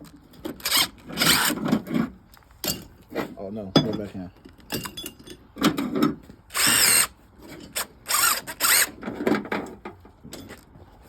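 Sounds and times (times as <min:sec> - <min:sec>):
power drill running: 0:00.6 - 0:01.6, 0:06.5 - 0:07.1, 0:07.8 - 0:08.9.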